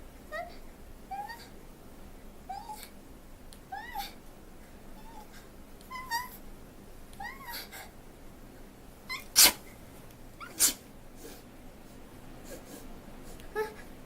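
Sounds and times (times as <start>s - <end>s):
woman squeaking: 3.7s - 4.2s, 5.9s - 6.4s, 7.2s - 7.7s, 9.1s - 9.6s, 10.4s - 10.8s
woman sneezing: 9.4s - 9.6s.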